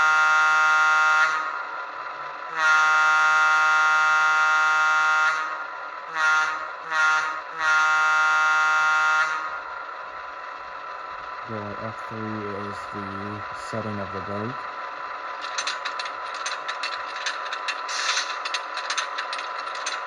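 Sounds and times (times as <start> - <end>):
locomotive air horn through small speaker: 0.0 - 1.6, 2.5 - 9.6.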